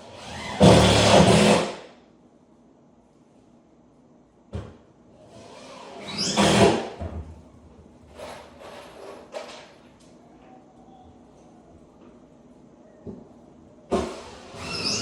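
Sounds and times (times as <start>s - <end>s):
scraping slide on floor: 8.1s - 9.5s.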